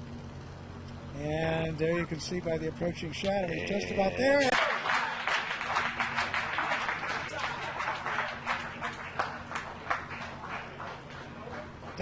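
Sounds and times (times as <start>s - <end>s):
crowd applauding: 3.5s - 12.0s.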